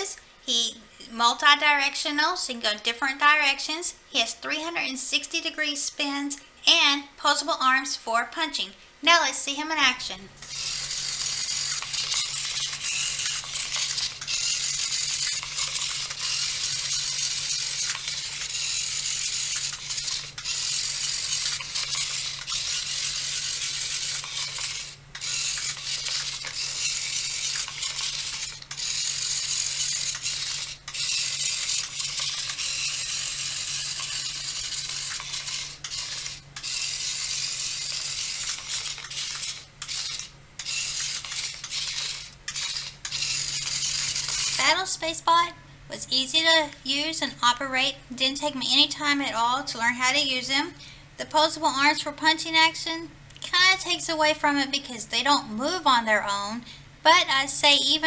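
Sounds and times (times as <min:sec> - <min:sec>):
toy robot motors whirring: 0:10.4 - 0:45.3.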